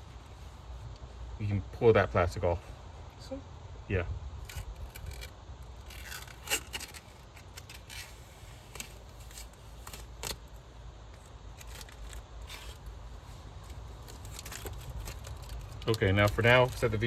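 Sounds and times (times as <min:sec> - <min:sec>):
steady low rumble: 0:00.0 - 0:07.3
plastic film crinkling: 0:04.4 - 0:17.0.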